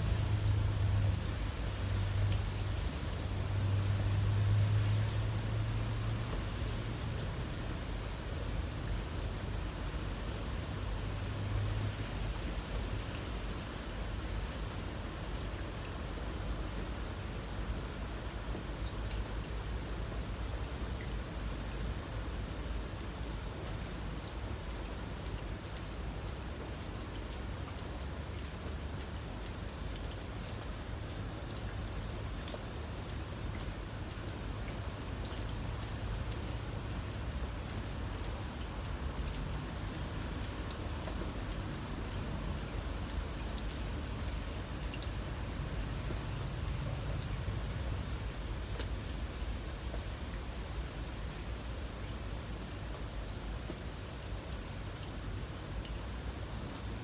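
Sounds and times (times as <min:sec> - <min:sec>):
low steady rumble: 0:00.0 - 0:08.7
insects trilling: 0:00.0 - 0:57.0.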